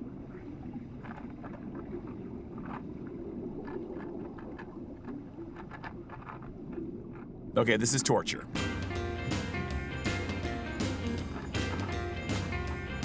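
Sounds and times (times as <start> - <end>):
muffled underwater rumble: 0.0 - 7.6
faint irregular clicks: 0.5 - 7.4.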